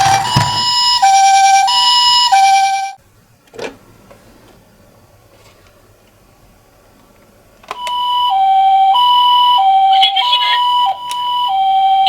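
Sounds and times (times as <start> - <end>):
toy ambulance two-tone siren: 0.0 - 3.0, 7.7 - 12.0.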